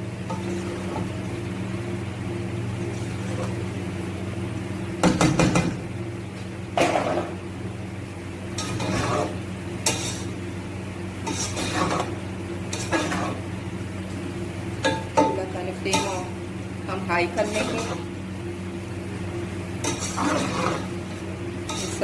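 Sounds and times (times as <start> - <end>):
steady low hum: 0.0 - 22.0
spatula scraping rice in pan: 8.6 - 10.4, 11.2 - 13.4, 19.8 - 22.0.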